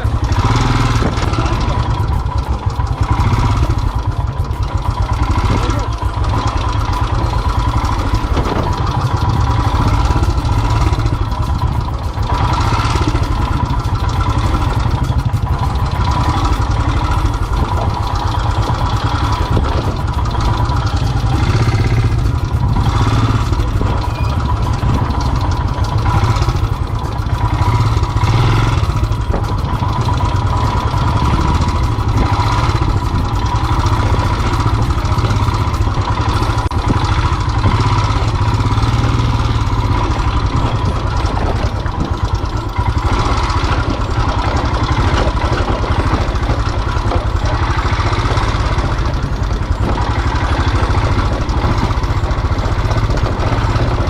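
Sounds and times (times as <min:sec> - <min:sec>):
motorcycle engine running at low revs: 0:00.0 - 0:54.0.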